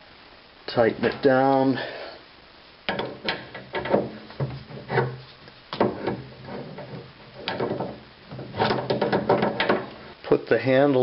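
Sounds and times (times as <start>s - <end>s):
wrench creaking and scraping: 2.9s - 10.2s.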